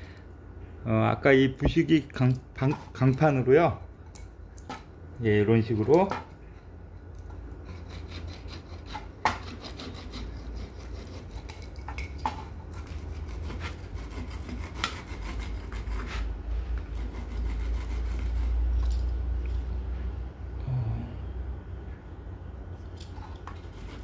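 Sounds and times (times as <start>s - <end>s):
metal grater rasping wood: 7.6s - 11.8s, 12.7s - 16.3s, 16.9s - 18.6s, 23.5s - 24.0s.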